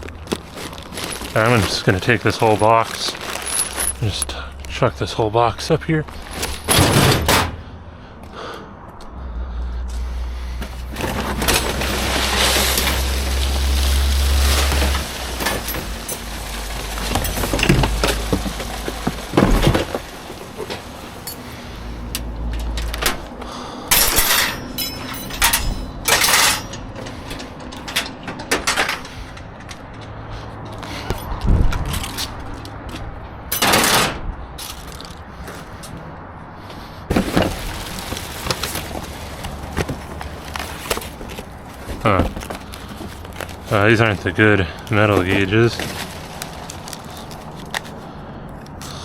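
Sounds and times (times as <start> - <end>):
scrap clanking in metal dumpster: 6.2 - 7.6, 10.8 - 21.7, 23.9 - 31.2, 37.1 - 43.1
loud metal bangs: 6.5 - 7.6.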